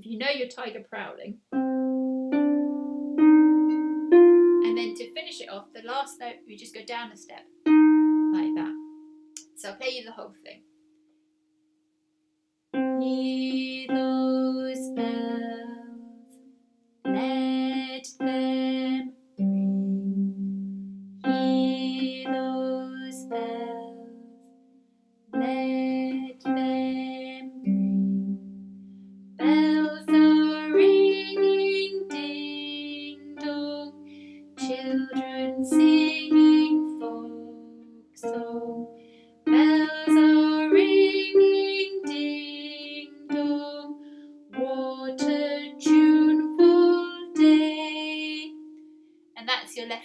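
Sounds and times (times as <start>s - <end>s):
harp plucked notes: 1.5s - 10.0s, 17.0s - 24.6s, 25.3s - 49.0s.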